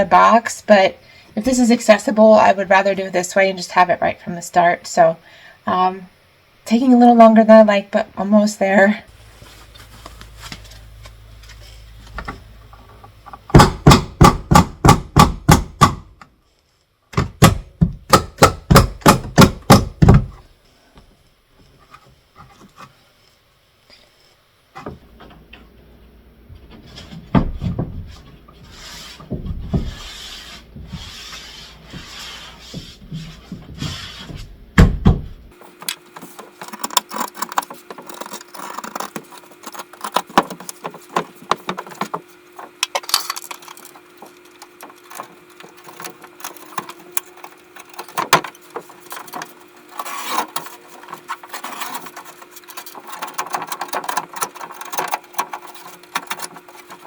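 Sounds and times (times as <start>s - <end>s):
steady hum: 0.0s - 57.0s
hammer blows on a wall: 13.5s - 16.1s
knocking and scraping: 26.6s - 57.0s.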